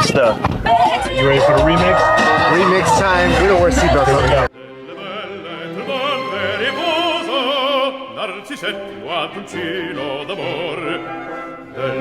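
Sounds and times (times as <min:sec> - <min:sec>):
operatic singing with vibrato: 0:03.8 - 0:12.0.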